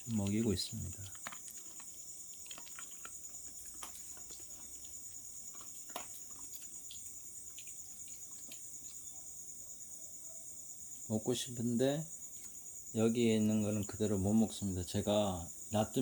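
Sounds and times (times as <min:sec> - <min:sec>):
dog crunching dry kibble: 0:00.0 - 0:09.0
crickets chirring: 0:00.0 - 0:16.0.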